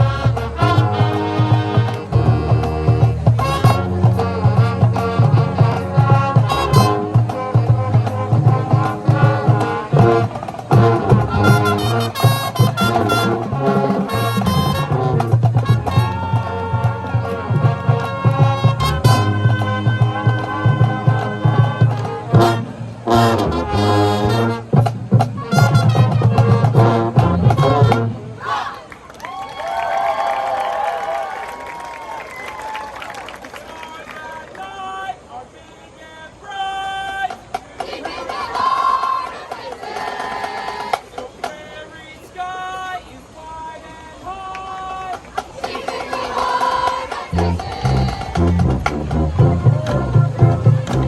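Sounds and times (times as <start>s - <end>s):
low drums beating: 0.0s - 28.1s, 45.1s - 51.0s
marching band brass: 0.0s - 35.2s, 36.4s - 51.0s.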